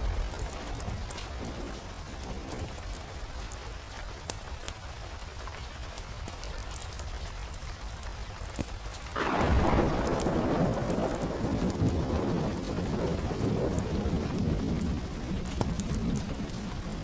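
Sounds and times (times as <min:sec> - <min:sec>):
thunder rolling: 0:00.0 - 0:03.6, 0:09.1 - 0:17.0
steady rain: 0:00.0 - 0:17.0.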